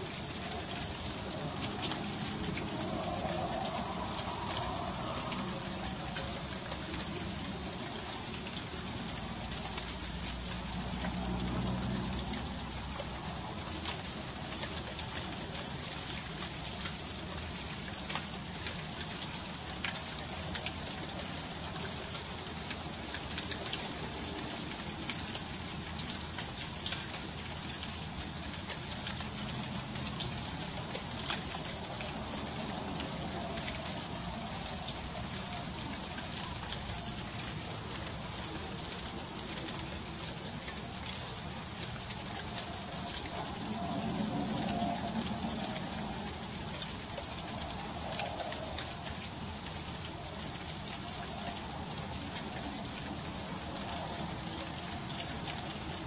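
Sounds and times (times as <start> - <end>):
freezing rain ticking: 0.0 - 56.0.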